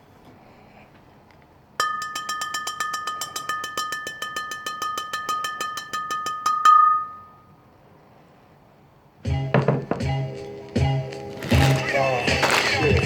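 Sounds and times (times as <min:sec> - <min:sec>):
rapid metallic bell strikes: 0:01.8 - 0:07.4
steady two-pitched ring: 0:01.8 - 0:07.6.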